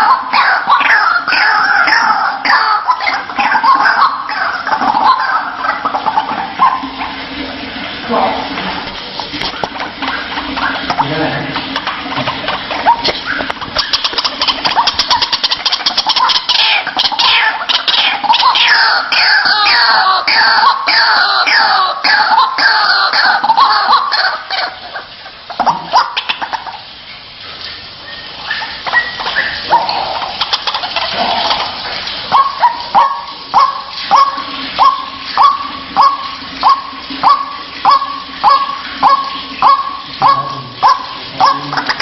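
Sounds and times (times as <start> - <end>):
bird croaking calls: 10.6 - 26.9, 28.1 - 42.0.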